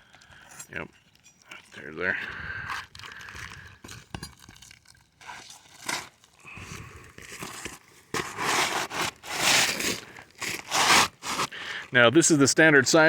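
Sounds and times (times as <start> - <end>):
roof shingles crinkling and scraping: 0.0 - 11.9.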